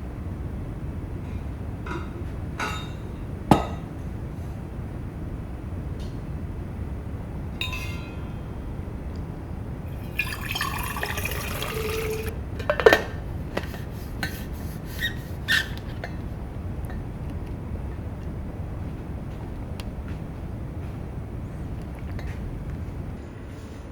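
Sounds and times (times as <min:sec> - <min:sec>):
liquid pouring into container: 0:09.9 - 0:12.3.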